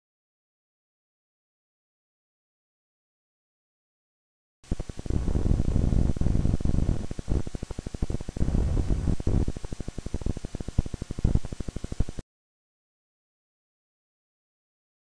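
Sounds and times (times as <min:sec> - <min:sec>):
low fluttering rumbling drone: 0:04.7 - 0:12.2.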